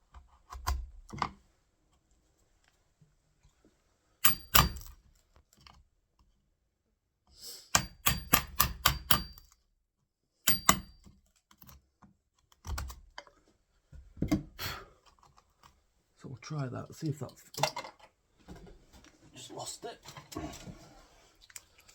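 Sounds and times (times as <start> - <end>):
hammer striking chisel: 4.2 - 4.9, 7.7 - 9.5, 10.5 - 11.0.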